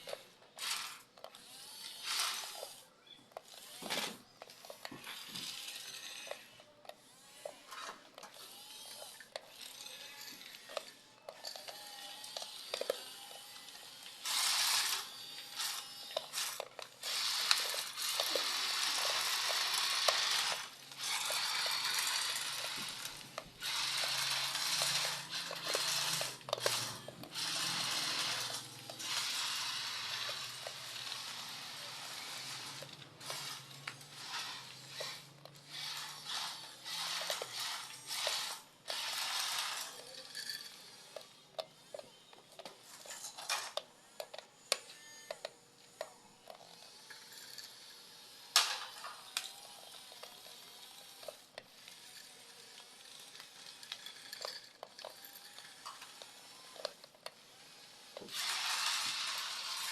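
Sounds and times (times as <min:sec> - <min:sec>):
toy bulldozer scraping and clattering: 0:00.0 - 0:59.9.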